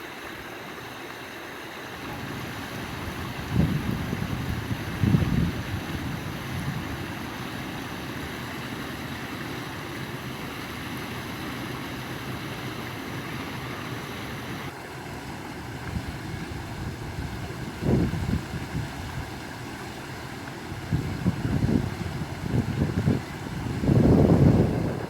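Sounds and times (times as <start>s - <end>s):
flowing water rushing: 0.0s - 25.0s.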